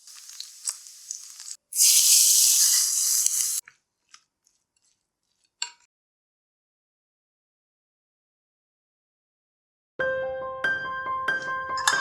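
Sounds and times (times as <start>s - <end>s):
food sizzling in hot oil: 0.0s - 3.6s.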